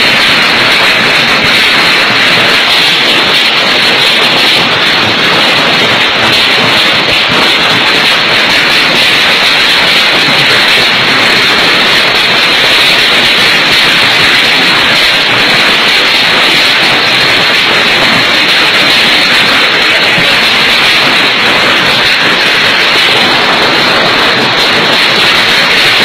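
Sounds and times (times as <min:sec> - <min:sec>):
hailstorm with strong wind: 0:00.0 - 0:26.0.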